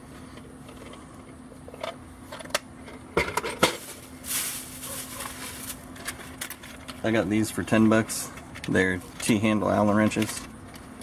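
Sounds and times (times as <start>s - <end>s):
faint steady hum: 0.0s - 11.0s
scrape or rustle: 3.7s - 5.8s.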